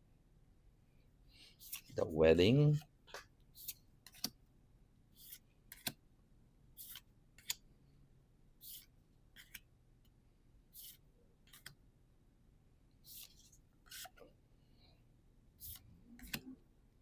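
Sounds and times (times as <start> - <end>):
cards swishing: 1.6 - 2.8, 3.6 - 4.3, 6.8 - 7.6, 8.6 - 9.6, 10.8 - 11.7, 13.0 - 14.2, 15.6 - 16.6
card clicks: 16.2 - 16.5.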